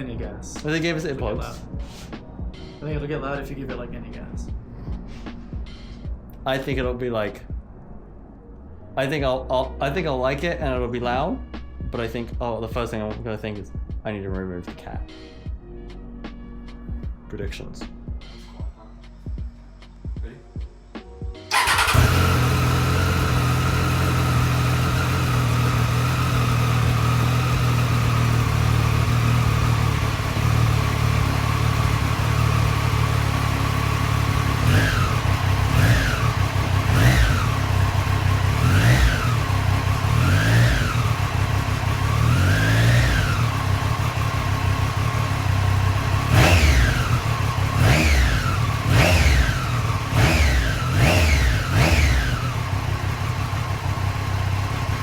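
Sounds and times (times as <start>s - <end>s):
motorcycle engine idling: 21.5s - 55.0s
motorcycle throttle blips: 21.5s - 55.0s.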